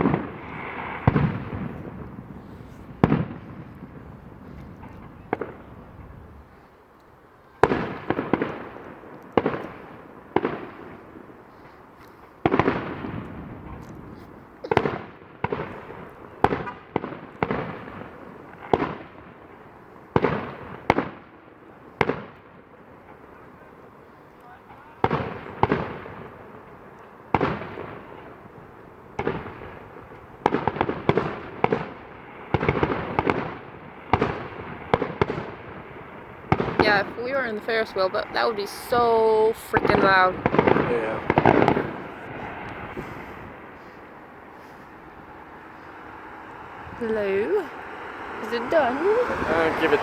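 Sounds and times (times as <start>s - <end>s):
firework shells bursting with echo: 0.0s - 6.2s, 7.6s - 21.4s, 24.6s - 48.6s.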